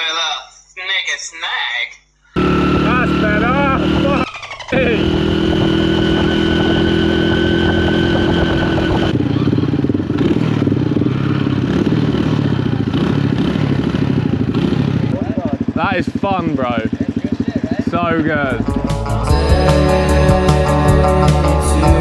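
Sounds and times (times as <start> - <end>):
motorcycle engine running: 2.4 - 22.0.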